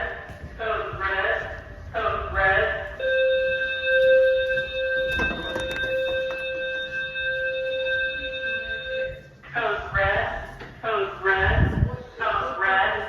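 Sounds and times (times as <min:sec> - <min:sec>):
fire alarm continuous tone: 0:00.0 - 0:09.6.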